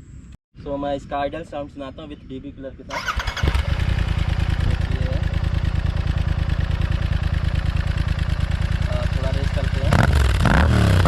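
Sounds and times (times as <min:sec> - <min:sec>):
motorcycle engine idling: 0:02.9 - 0:10.4.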